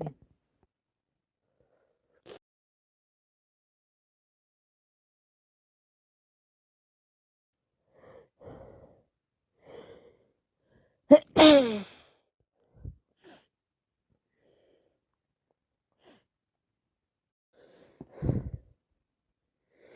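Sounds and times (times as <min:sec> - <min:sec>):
person sneezing: 0:11.1 - 0:12.0.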